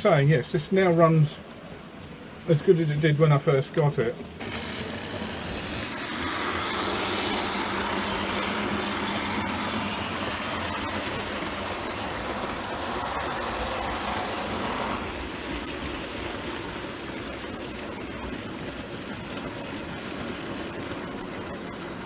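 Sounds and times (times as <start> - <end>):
model train motor humming: 4.4 - 22.0.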